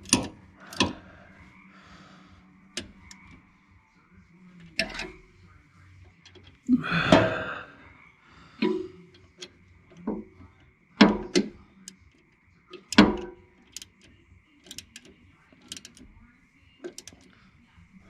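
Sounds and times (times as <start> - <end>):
ratchet wrench clicking: 0.0 - 1.0, 4.7 - 5.2, 11.0 - 16.2, 16.9 - 17.3.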